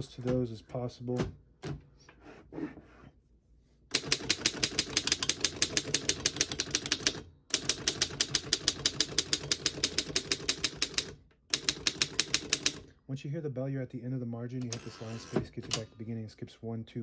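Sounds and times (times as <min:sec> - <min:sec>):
manual typewriter typing: 0:03.9 - 0:12.9, 0:14.6 - 0:15.9.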